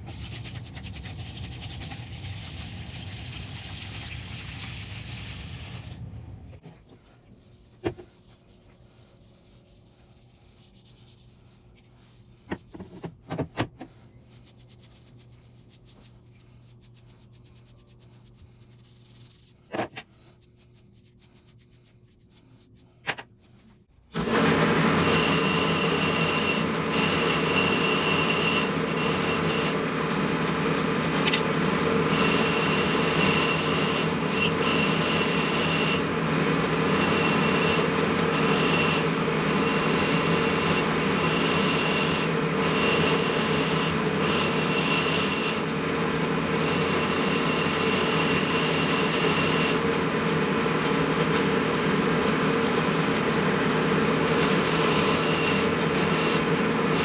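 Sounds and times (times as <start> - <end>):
power abrasive tool rasping: 24.2 - 57.0.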